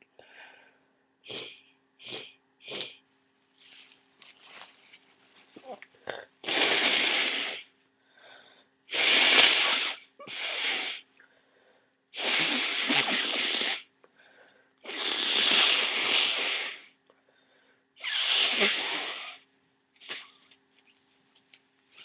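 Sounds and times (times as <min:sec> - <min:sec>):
faint breaths: 0:00.0 - 0:01.8, 0:07.5 - 0:08.8, 0:09.9 - 0:14.9, 0:16.2 - 0:20.6
person blowing nose: 0:06.4 - 0:07.7, 0:08.9 - 0:11.1, 0:12.2 - 0:13.9, 0:14.8 - 0:16.9, 0:18.0 - 0:19.4, 0:20.0 - 0:20.5.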